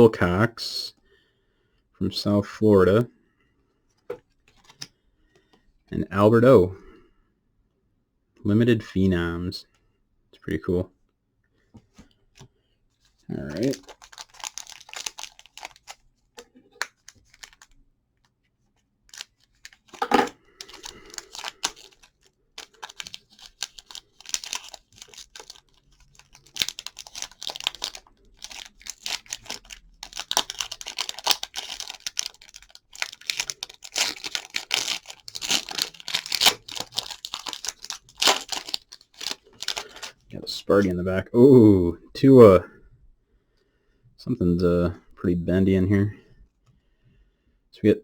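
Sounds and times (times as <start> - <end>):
foil wrapper tearing and crinkling: 13.4 - 16.0, 16.8 - 17.8, 19.1 - 40.1.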